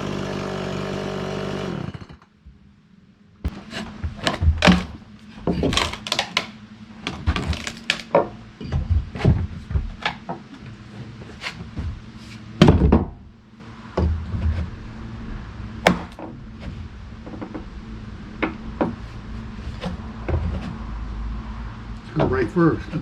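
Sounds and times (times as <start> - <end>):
steady low hum: 2.4 - 23.0
knocks and thumps: 3.5 - 13.3, 13.9 - 14.8, 15.8 - 17.7, 18.4 - 20.9.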